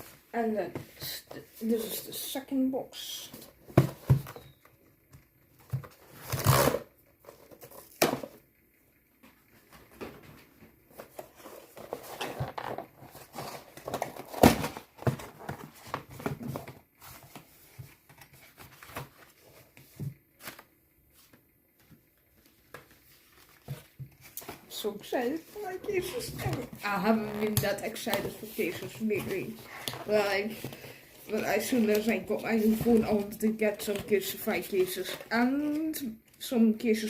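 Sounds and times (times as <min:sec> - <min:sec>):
paper and cardboard crinkling: 0:10.9 - 0:36.1.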